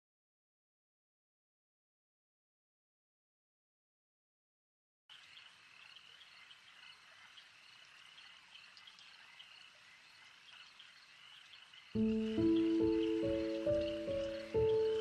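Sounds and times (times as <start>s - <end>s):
small chirps: 5.1s - 15.0s
soft hiss: 5.1s - 15.0s
high-pitched chirping chorus: 5.2s - 15.0s.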